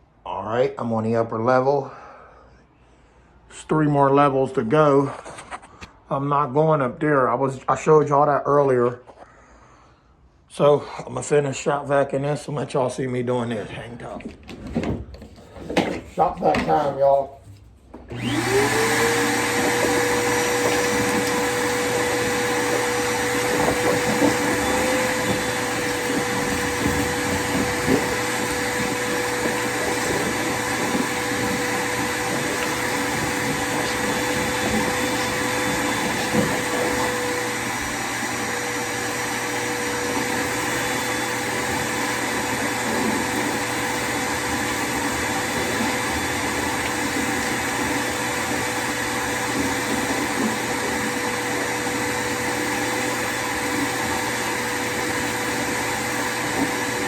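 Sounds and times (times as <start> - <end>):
shop vacuum whining: 12.5 - 57.0.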